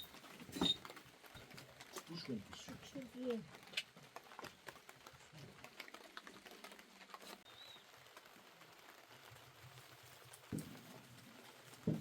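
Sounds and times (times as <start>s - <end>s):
light rain pattering: 0.0s - 12.0s
small drip ticks: 1.3s - 10.8s.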